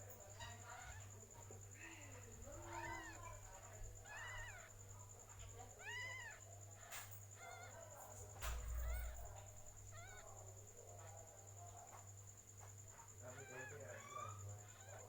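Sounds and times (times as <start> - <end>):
faint steady hum: 0.0 - 15.0
cat mewing: 2.5 - 4.8, 5.4 - 10.4.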